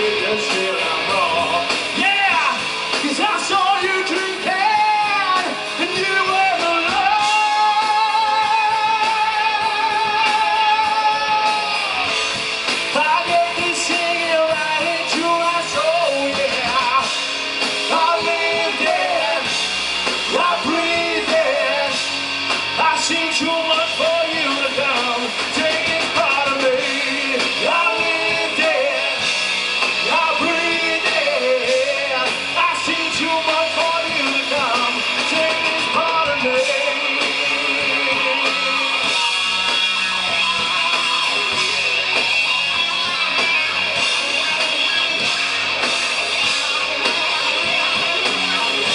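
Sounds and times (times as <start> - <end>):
rock band playing live: 0.0 - 48.9.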